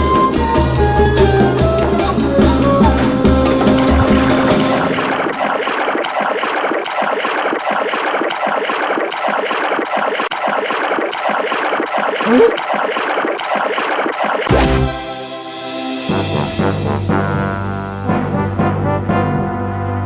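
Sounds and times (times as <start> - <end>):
rushing splashing water: 3.2 - 14.5.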